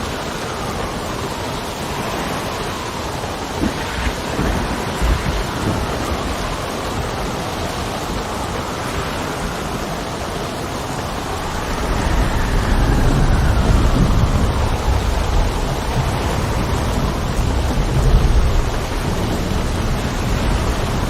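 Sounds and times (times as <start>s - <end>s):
steady rain: 0.0s - 21.0s
wind noise: 0.0s - 21.0s
low rumble: 11.2s - 21.0s.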